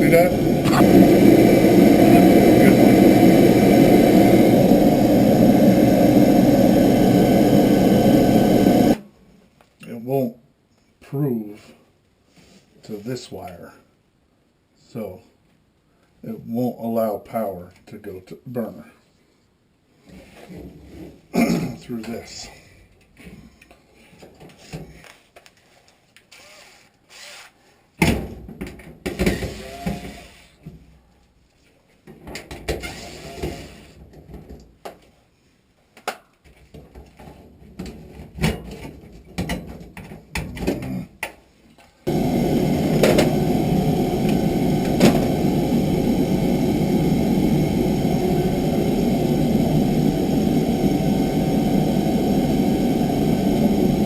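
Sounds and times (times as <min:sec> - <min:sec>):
oil burner running: 0:00.0 - 0:09.0, 0:42.1 - 0:54.0.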